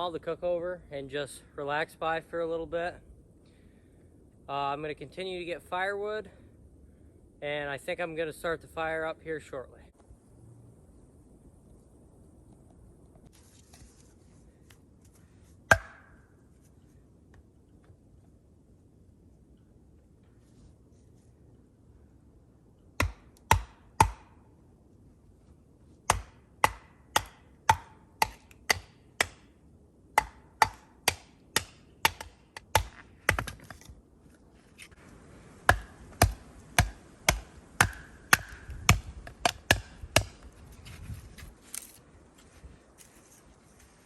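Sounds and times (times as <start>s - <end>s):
firewood chopping strokes: 13.3s - 17.4s, 23.0s - 24.4s, 26.0s - 34.0s, 34.6s - 44.0s.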